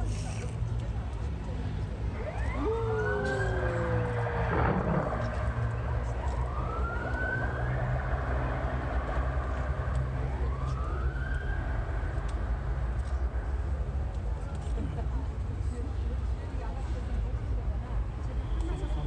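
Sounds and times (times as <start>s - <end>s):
steady low rumble: 0.0s - 18.5s
siren wailing: 2.1s - 14.5s.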